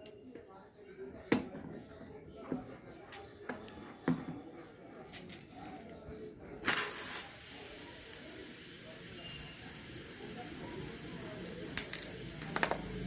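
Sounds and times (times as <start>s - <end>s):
air hissing out of tyre: 6.6s - 13.0s
tools clicking and tapping: 11.7s - 13.0s.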